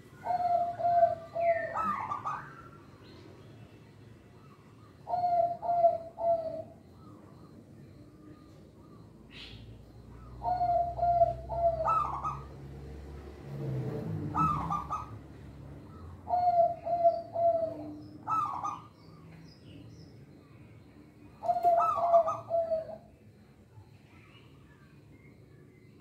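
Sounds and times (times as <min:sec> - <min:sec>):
dove cooing: 0:00.0 - 0:03.0, 0:04.4 - 0:19.4, 0:21.2 - 0:23.2
faint small bird chirps: 0:00.0 - 0:12.6, 0:14.4 - 0:26.0.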